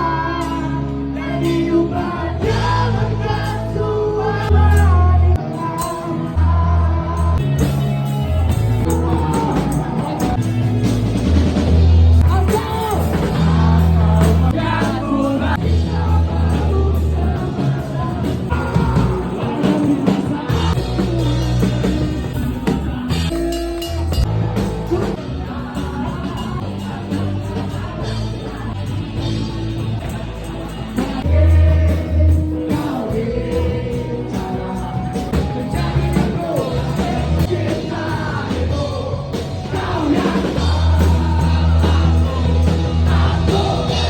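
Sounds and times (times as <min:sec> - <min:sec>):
person singing: 0:00.0 - 0:08.0, 0:08.8 - 0:10.5, 0:12.2 - 0:29.2
rock music with bass and drums: 0:00.0 - 0:44.0.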